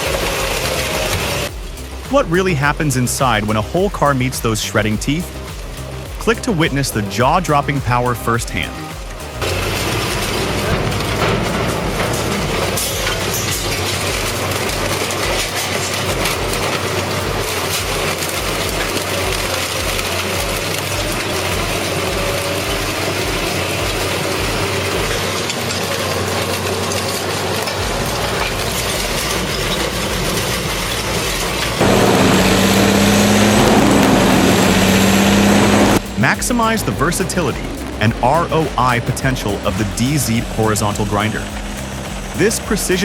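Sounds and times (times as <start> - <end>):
industrial shredder droning: 0.0 - 43.0
steady hum: 26.6 - 43.0.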